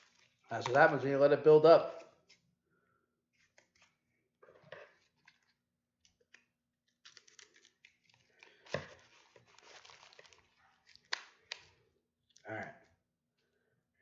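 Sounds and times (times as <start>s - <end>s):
package wrapping rustling: 0.0s - 1.0s, 6.9s - 11.8s.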